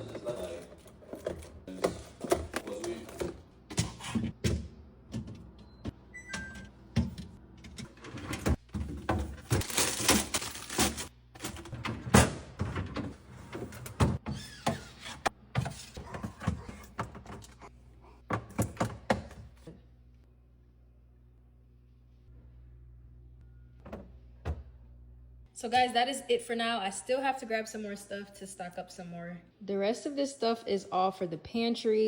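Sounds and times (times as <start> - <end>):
packaging rustling: 9.5 - 11.1.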